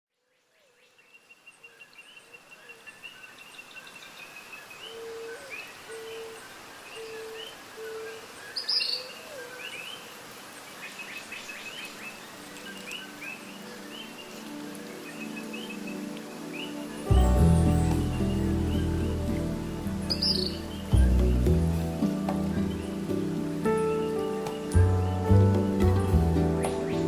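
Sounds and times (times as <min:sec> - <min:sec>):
music: 0:12.4 - 0:27.0
birds chirping and calling: 0:17.6 - 0:27.0.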